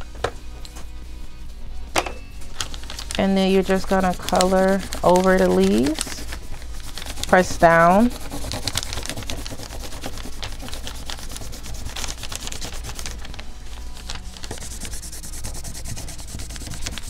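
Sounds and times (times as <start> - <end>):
crayon scraping on paper: 3.5 - 13.4, 14.4 - 17.0.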